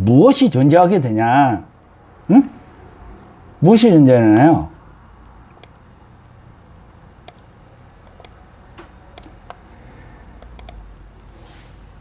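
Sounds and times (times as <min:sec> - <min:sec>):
faint low steady hum: 0:00.0 - 0:12.0
computer mouse clicks: 0:05.5 - 0:05.8, 0:07.2 - 0:11.3.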